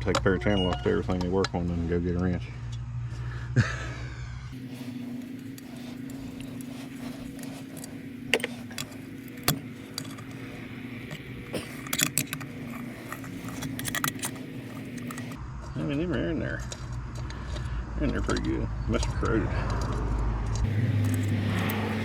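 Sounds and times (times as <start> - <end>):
low hum: 1.8 - 22.0
metal parts clinking: 4.6 - 15.4, 20.6 - 21.8.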